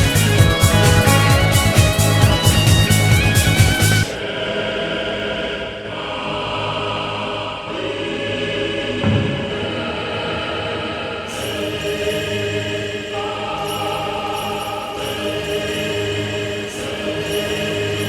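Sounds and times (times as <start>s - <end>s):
slow orchestral music with choir: 4.2s - 18.0s.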